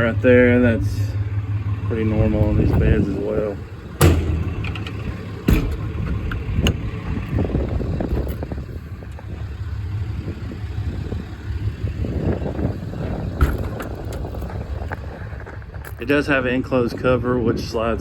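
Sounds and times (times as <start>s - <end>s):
diesel truck engine idling: 0.0s - 18.0s
knocks: 4.0s - 6.4s.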